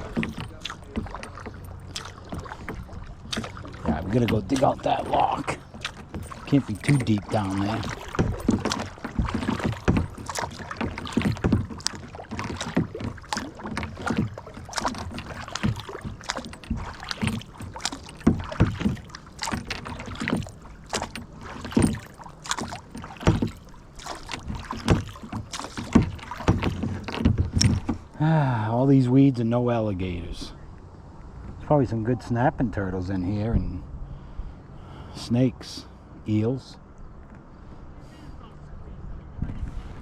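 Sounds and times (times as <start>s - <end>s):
knocks against boat hull: 0.0s - 28.1s
paddle splashing in water: 0.0s - 28.2s.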